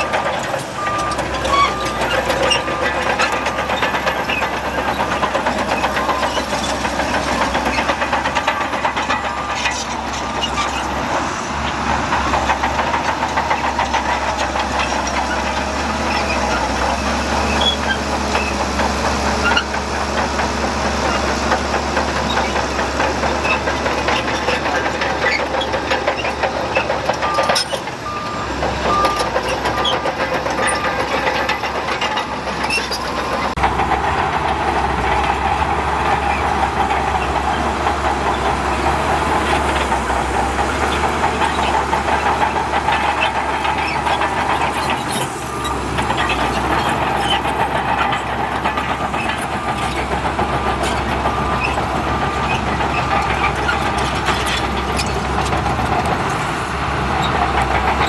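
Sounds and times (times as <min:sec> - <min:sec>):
heavy diesel engines running: 0:00.0 - 0:58.0
reversing alarm beeping: 0:27.2 - 0:31.2, 0:48.8 - 0:53.5.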